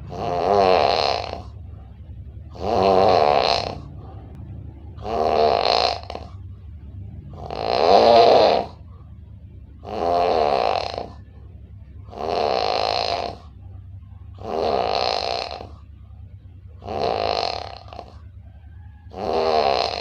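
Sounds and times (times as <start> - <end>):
person snoring: 0.0 - 1.6, 2.5 - 4.4, 5.0 - 6.3, 7.4 - 8.8, 9.8 - 11.2, 12.1 - 13.4, 14.4 - 15.8, 16.8 - 18.2, 19.1 - 20.0
steady low hum: 0.0 - 20.0.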